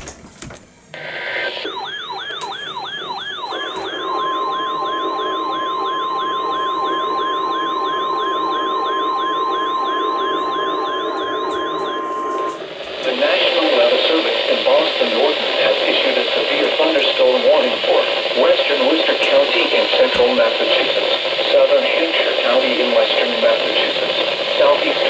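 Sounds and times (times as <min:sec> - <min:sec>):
warbling electronic siren: 0:01.0 - 0:12.6.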